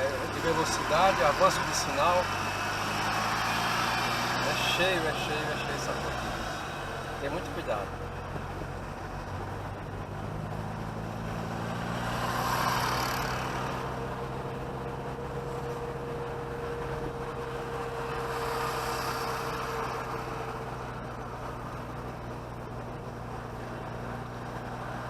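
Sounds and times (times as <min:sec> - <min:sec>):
car engine running: 0:00.0 - 0:25.0
road and traffic noise: 0:00.0 - 0:25.0.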